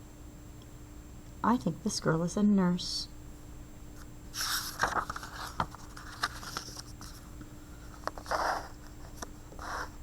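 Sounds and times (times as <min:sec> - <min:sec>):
paper page turning: 0:04.4 - 0:07.3, 0:08.0 - 0:09.9.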